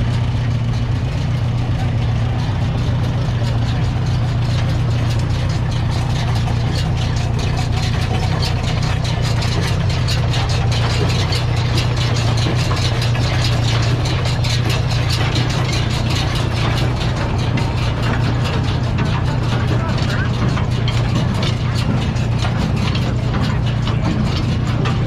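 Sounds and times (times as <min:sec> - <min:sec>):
tractor engine running: 0:00.0 - 0:25.0.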